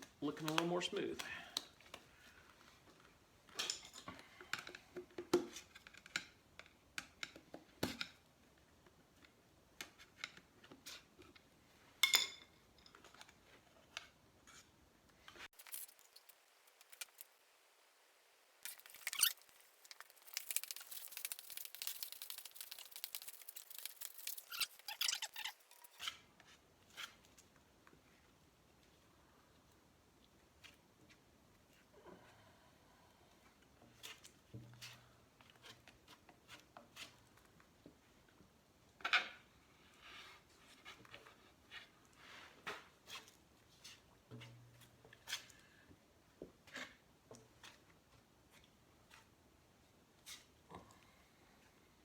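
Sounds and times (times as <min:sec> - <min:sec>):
clicks and rustles: 0:12.8 - 0:17.4, 0:18.6 - 0:26.2.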